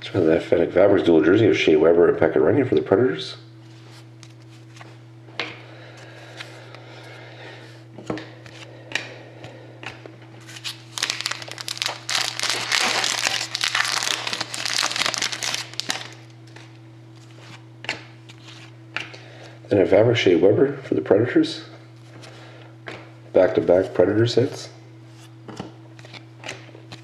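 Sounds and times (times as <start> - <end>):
low electrical hum: 0.0 - 27.0
cards clicking and rustling: 9.8 - 16.7
plastic wrapper crinkling: 10.5 - 16.4.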